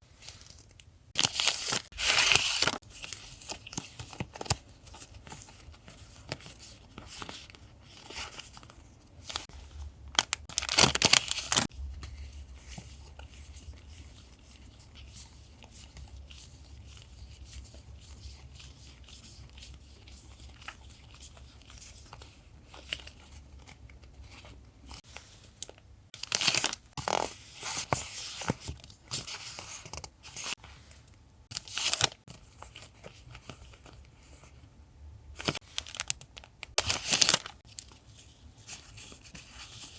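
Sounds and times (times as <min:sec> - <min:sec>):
paper rustling and tearing: 0:01.2 - 0:23.3, 0:31.6 - 0:33.6, 0:36.8 - 0:39.9.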